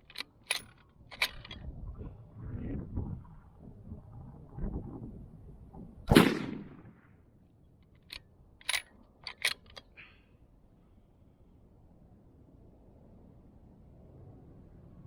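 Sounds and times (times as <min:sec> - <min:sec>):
rifle bolt clicking: 0:00.0 - 0:01.6, 0:07.9 - 0:09.9
rifle shot: 0:06.1 - 0:07.1.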